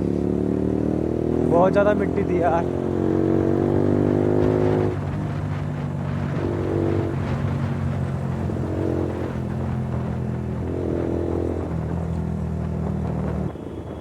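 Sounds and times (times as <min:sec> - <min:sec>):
motorcycle engine running: 0:00.0 - 0:13.7.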